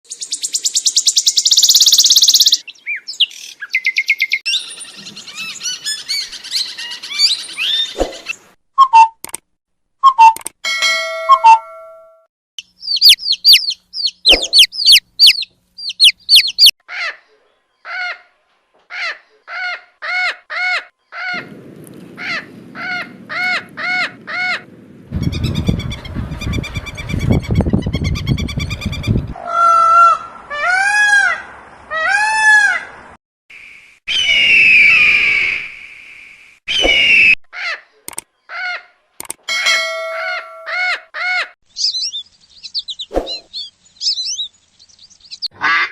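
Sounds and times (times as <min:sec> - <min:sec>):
shrill high bird calls: 0:00.3 - 0:09.2, 0:12.6 - 0:17.2, 0:40.1 - 0:45.6
harsh bird calls: 0:12.6 - 0:18.3, 0:19.0 - 0:33.1, 0:40.3 - 0:45.9
arching bird calls: 0:19.0 - 0:31.4
repeated bird honks: 0:45.5 - 0:45.9.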